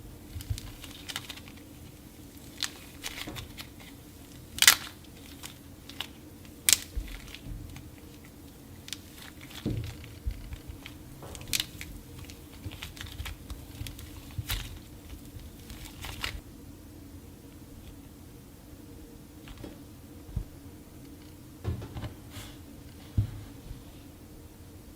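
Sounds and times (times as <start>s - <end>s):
dried clay snapping and crumbling: 0.3s - 16.4s.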